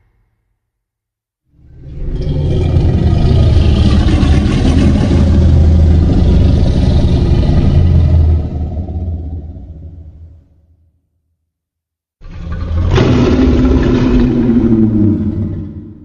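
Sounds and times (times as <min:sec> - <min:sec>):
dense crackling rumble: 0:02.2 - 0:08.9.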